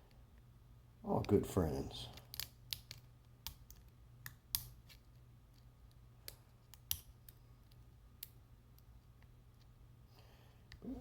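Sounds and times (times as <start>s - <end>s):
metallic clicks of lock picks: 2.1s - 4.7s.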